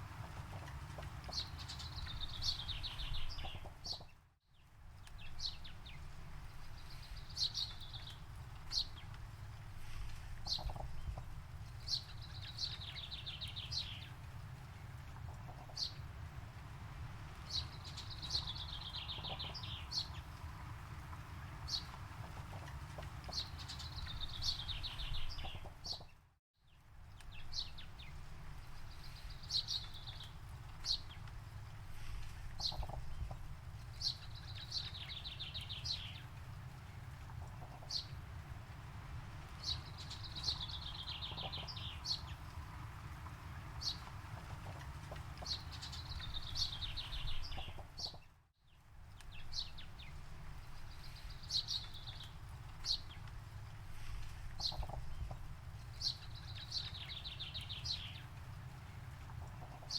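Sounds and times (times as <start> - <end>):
low steady rumble: 26.7 - 59.9.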